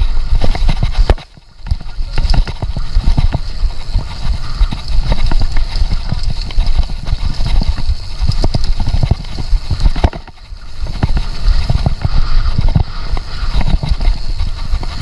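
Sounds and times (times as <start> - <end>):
mountain bike rattling on trail: 0.0 - 15.0.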